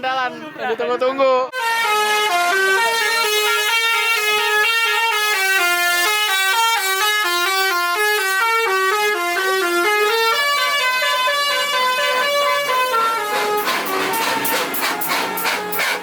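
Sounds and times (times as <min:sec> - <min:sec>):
musical air horn tune: 0:01.5 - 0:16.0.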